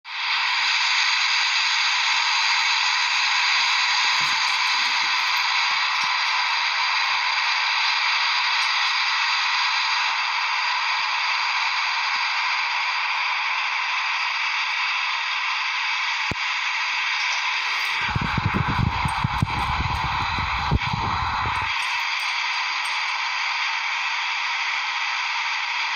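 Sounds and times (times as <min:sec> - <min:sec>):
faint steady tones: 0:00.1 - 0:25.9
radio static hiss: 0:00.1 - 0:25.9
low rumbling noise: 0:17.5 - 0:22.0.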